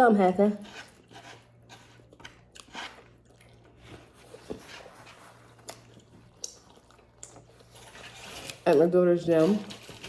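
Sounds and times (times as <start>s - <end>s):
chewing with wet mouth clicks: 1.0s - 4.0s, 5.5s - 7.8s.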